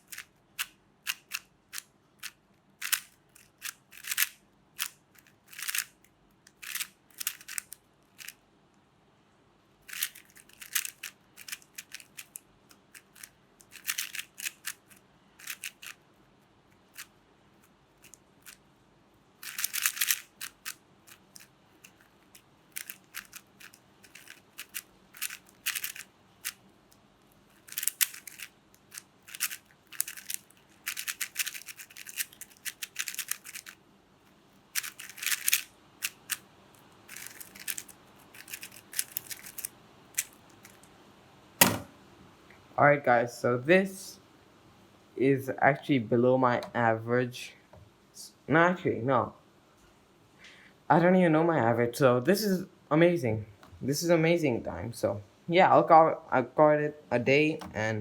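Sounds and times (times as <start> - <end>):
plastic puzzle cube clicking: 0.0 - 8.4, 9.9 - 16.0, 19.4 - 26.6, 27.5 - 33.8, 34.8 - 36.4, 37.1 - 40.8.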